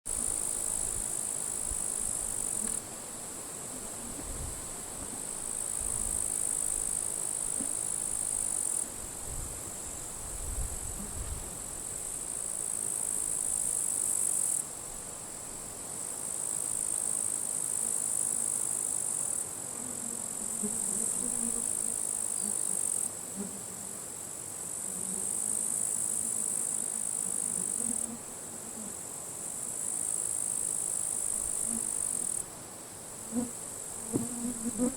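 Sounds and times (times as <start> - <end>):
wind rumbling on microphone: 4.1 - 5.2, 9.0 - 11.6.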